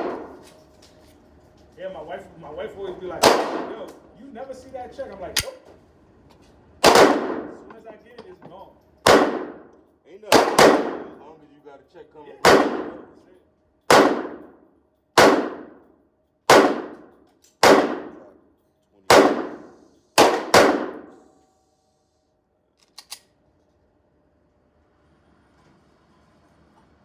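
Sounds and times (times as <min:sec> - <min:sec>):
pistol shots with echo: 0:00.0 - 0:00.5, 0:03.2 - 0:04.0, 0:05.4 - 0:05.6, 0:06.8 - 0:07.8, 0:09.0 - 0:11.2, 0:12.4 - 0:13.2, 0:13.9 - 0:14.6, 0:15.2 - 0:15.9, 0:16.5 - 0:18.4, 0:19.1 - 0:21.3.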